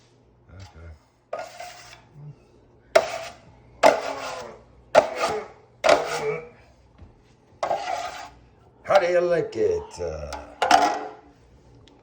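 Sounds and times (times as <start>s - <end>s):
taping knife scraping compound: 1.3s - 2.1s, 3.0s - 6.5s, 7.6s - 8.4s.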